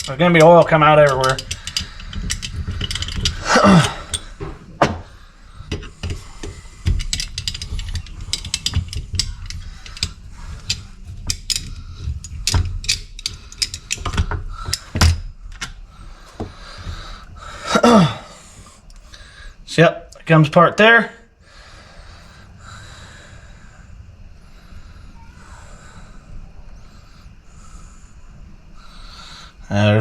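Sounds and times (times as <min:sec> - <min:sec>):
hand tools clinking on metal: 0:00.0 - 0:17.0.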